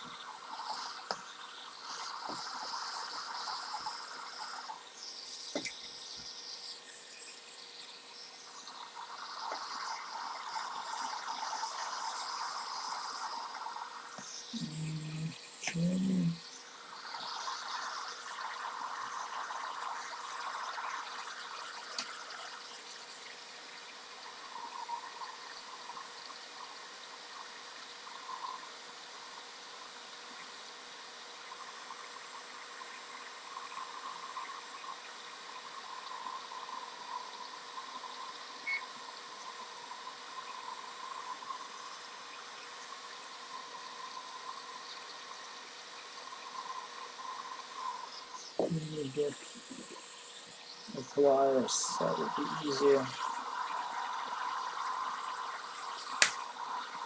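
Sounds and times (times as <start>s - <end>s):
faint steady hum: 0.0s - 57.0s
hot air blower hissing: 48.6s - 53.4s, 56.0s - 56.4s.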